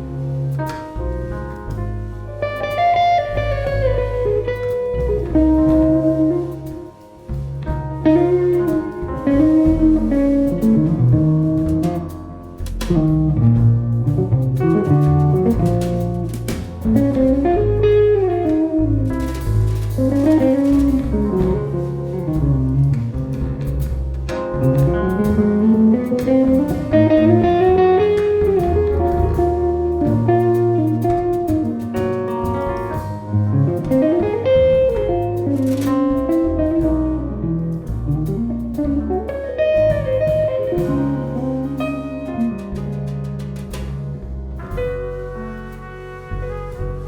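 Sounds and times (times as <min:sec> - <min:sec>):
double bass: 0:00.0 - 0:47.0
drums: 0:00.0 - 0:47.0
guitar melody: 0:02.4 - 0:07.1, 0:08.0 - 0:19.3, 0:24.4 - 0:44.0.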